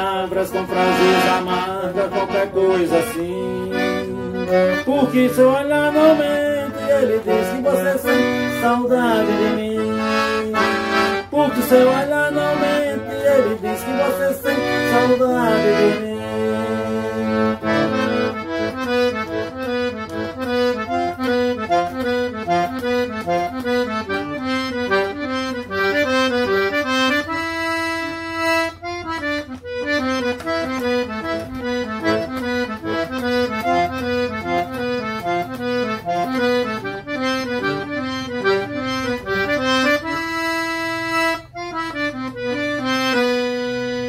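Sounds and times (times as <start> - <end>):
accordion melody: 0.0 - 44.0.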